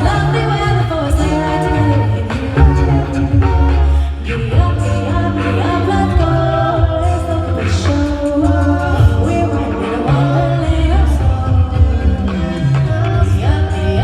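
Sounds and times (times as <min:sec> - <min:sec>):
a cappella group singing harmonies: 0:00.0 - 0:14.0
deep sung bass line: 0:00.0 - 0:14.0.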